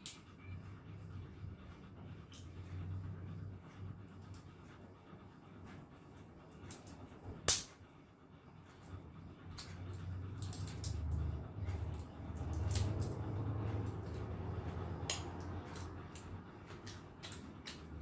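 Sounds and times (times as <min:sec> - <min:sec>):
sharp crack: 0:07.5 - 0:07.8.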